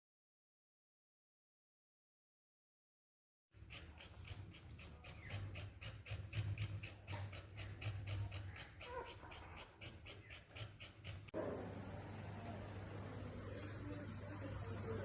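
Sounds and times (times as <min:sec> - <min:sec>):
puppy panting: 0:03.6 - 0:11.3.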